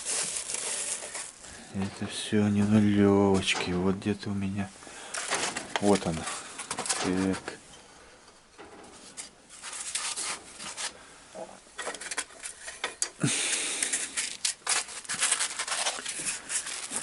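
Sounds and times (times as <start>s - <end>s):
handling noises on workbench: 0.0s - 4.0s, 5.1s - 7.7s, 8.5s - 11.0s, 11.8s - 13.2s.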